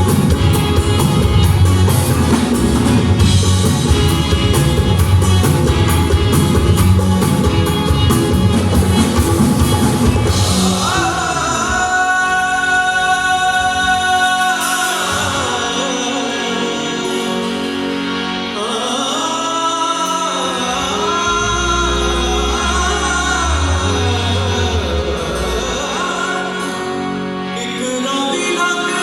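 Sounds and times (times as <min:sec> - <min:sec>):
deep bass notes: 0:00.0 - 0:14.2, 0:20.6 - 0:27.4
band playing: 0:00.0 - 0:29.0
person singing folk song: 0:10.0 - 0:29.0.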